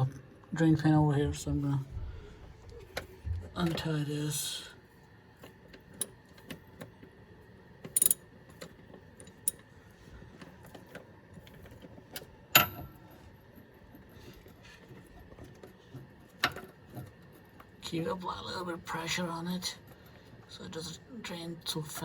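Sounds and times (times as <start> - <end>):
metallic clicks of tools: 7.8 - 9.7.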